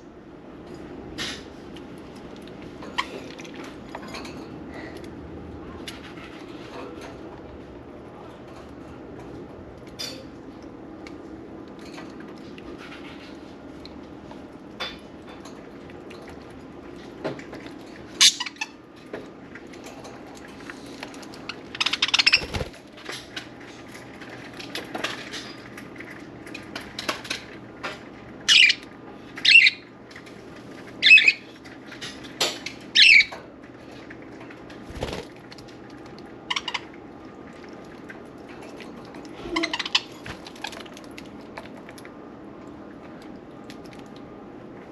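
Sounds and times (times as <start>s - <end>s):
low steady hum: 0.0s - 44.9s
budgerigars chirping and squawking: 18.2s - 18.7s, 21.8s - 22.6s, 28.5s - 28.8s, 29.4s - 29.8s, 31.0s - 31.4s, 33.0s - 33.3s, 36.5s - 36.9s, 39.6s - 40.1s.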